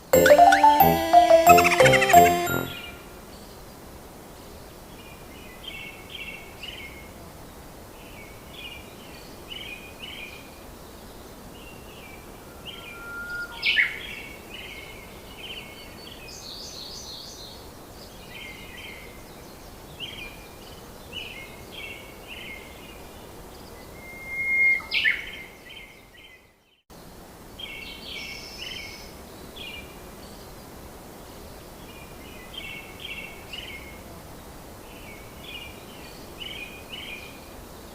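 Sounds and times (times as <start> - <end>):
steady background hiss: 27.0 - 37.9.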